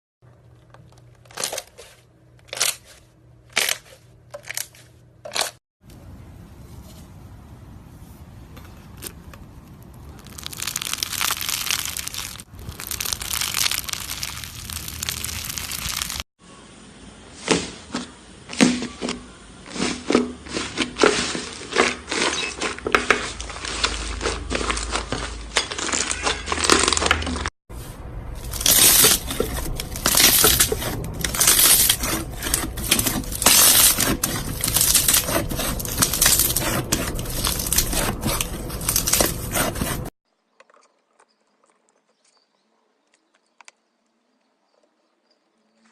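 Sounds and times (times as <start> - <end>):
crackling and popping slime: 10.0 - 16.2
slime squished by hand: 10.0 - 16.2.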